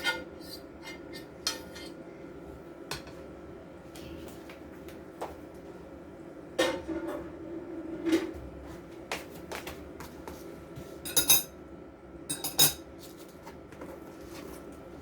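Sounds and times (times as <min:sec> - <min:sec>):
metal utensils clinking against dish: 0:00.0 - 0:02.0, 0:11.1 - 0:11.5, 0:12.3 - 0:12.8.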